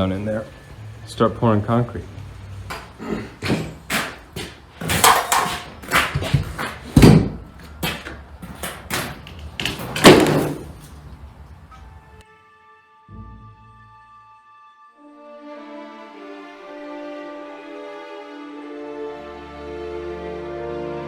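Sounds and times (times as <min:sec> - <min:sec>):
tool striking and scraping earth: 0:02.7 - 0:07.1
music: 0:11.7 - 0:21.0.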